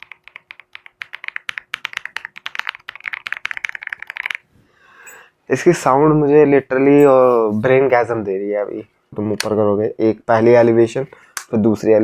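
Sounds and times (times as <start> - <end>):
mechanical keyboard typing: 0.0 - 4.4.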